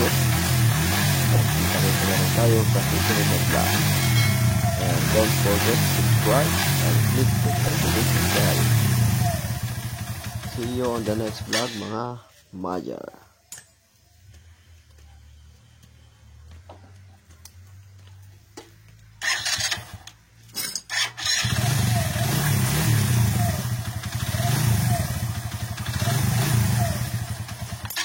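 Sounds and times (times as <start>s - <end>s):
motorcycle engine running: 0.0s - 11.9s, 21.2s - 28.0s
motorcycle electric starter: 0.0s - 12.0s, 19.2s - 20.2s, 20.8s - 28.0s.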